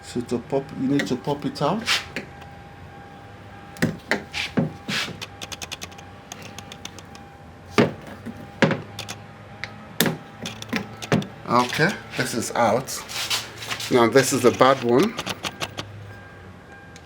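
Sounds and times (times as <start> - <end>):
car door handle clicks and knocks: 10.0 - 11.4.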